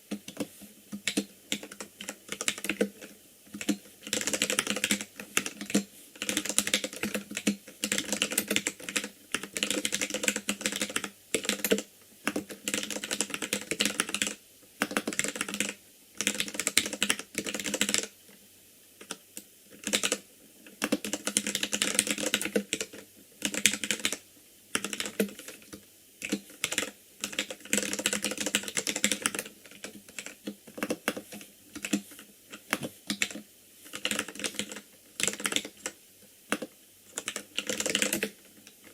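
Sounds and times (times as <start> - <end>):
mechanical keyboard keystrokes clacking: 36.5 - 38.3.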